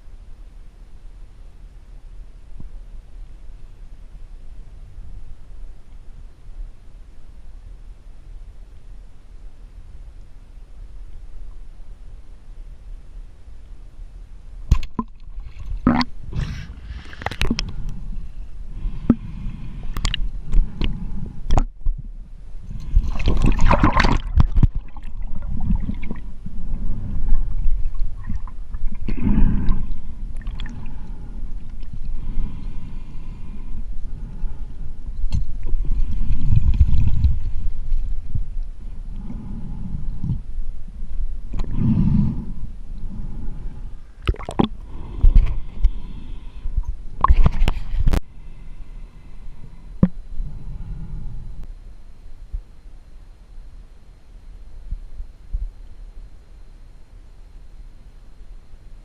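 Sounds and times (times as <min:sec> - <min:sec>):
water sloshing and gurgling: 0:14.7 - 0:38.6, 0:44.2 - 0:48.2
rushes of water: 0:22.7 - 0:33.3, 0:44.2 - 0:44.8.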